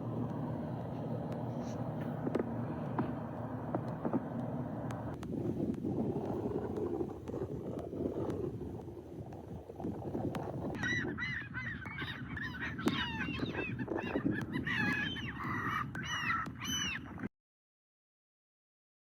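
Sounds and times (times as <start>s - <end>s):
low steady rumble: 0.0s - 17.3s
high-pitched animal calls: 10.8s - 17.1s.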